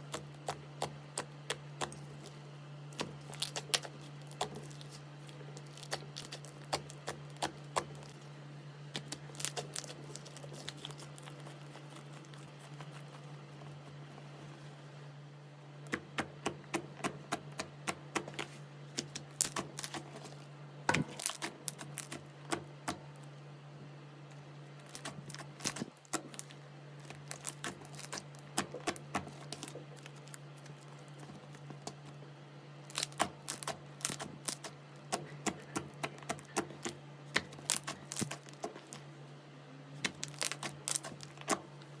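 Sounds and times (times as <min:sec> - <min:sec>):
slime clicking and popping: 0:32.9 - 0:38.9, 0:40.0 - 0:41.6.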